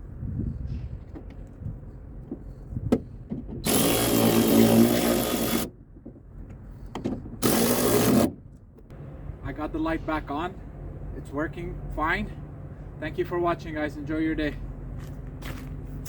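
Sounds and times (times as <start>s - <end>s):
power drill driving screws: 3.6s - 5.7s, 7.4s - 8.4s.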